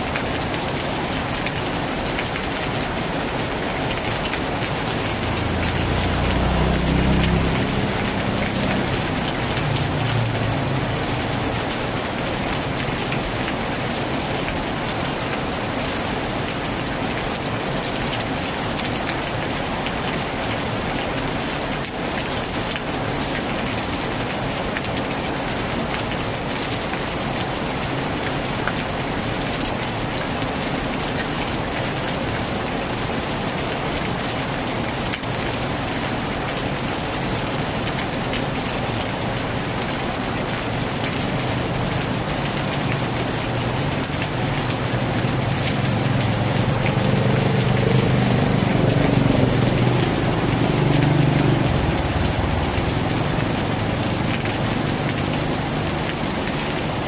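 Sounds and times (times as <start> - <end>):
heavy rain: 0.0 - 57.0
vehicle engine passing by: 4.7 - 11.4, 42.1 - 55.8.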